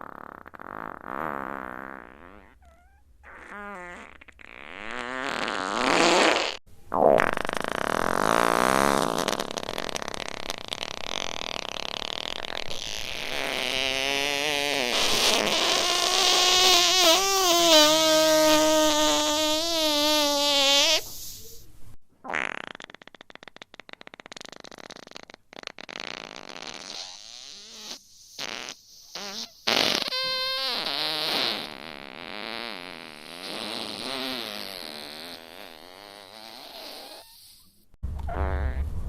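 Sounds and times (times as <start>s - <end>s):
fart sound effects: 0.0s - 21.3s, 22.2s - 39.0s.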